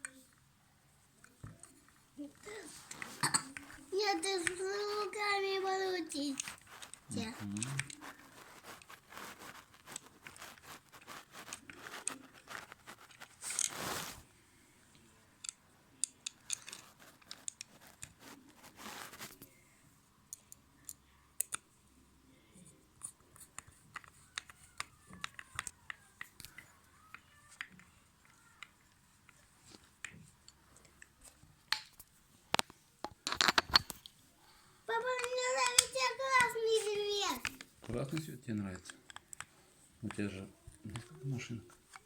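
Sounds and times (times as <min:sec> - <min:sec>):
screwdriver and plastic clicks: 0:23.5 - 0:29.4.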